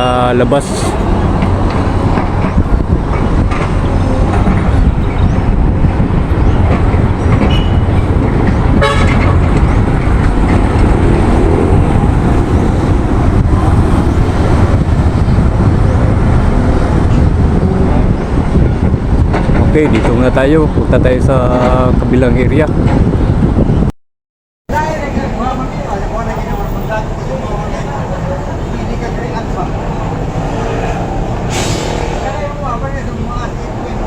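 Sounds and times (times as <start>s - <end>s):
vehicle engine rumbling: 0.0s - 23.9s, 24.7s - 34.0s
short horn toot: 8.8s - 9.4s.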